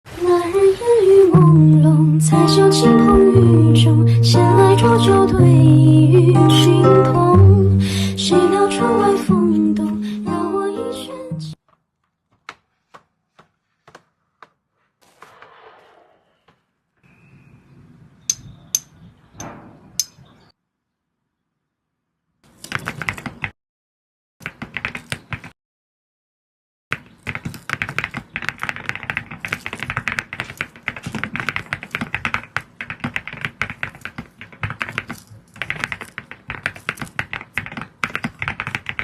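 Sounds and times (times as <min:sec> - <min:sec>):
mechanical keyboard typing: 0:27.2 - 0:39.0.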